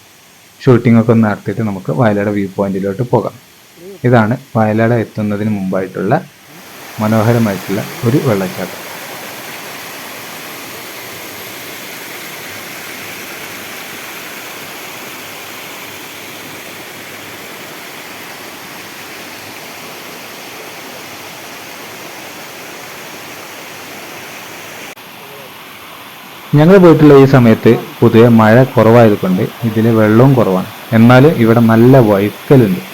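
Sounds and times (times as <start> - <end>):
waterfall splashing over rock: 0.0 - 32.9.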